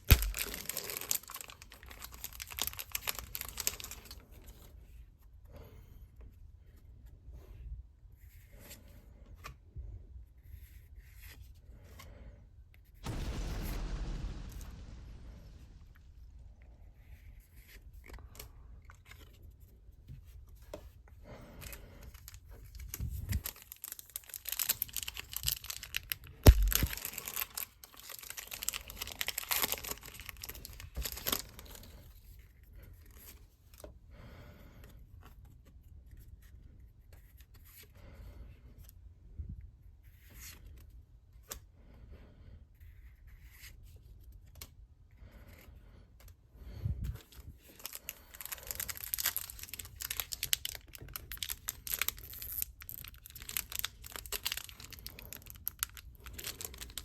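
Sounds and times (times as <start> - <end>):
packaging tearing and crinkling: 0.0 - 4.1, 22.6 - 31.9, 47.6 - 57.0
sharp knock: 26.5 - 27.0.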